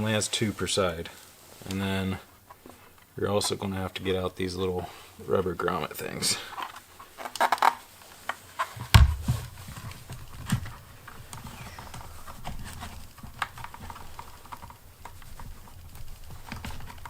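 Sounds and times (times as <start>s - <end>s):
loud thump: 8.8s - 9.6s.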